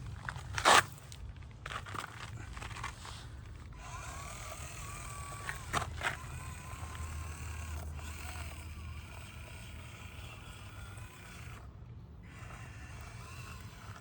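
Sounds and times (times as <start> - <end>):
rc crawler motor whining: 1.7 - 14.0.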